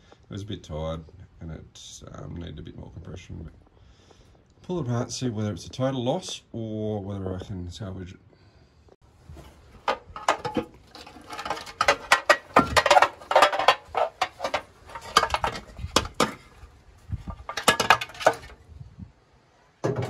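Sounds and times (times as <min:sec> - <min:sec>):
metal tools clinking: 0:09.4 - 0:18.6.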